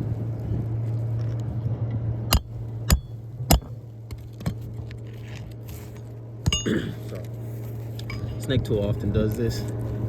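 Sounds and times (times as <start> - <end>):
low hum: 0.0 - 10.0
hammer striking metal tool: 2.3 - 3.7, 6.5 - 6.7.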